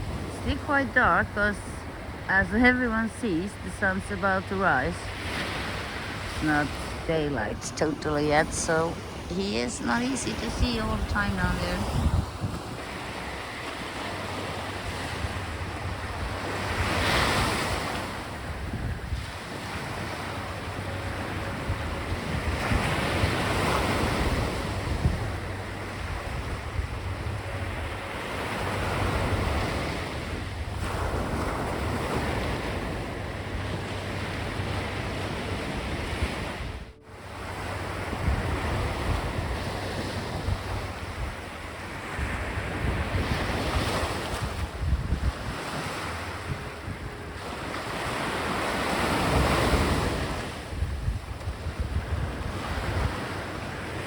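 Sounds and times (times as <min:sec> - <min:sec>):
sea waves breaking on beach: 0:00.0 - 0:54.0
wind rumbling on microphone: 0:00.0 - 0:54.0.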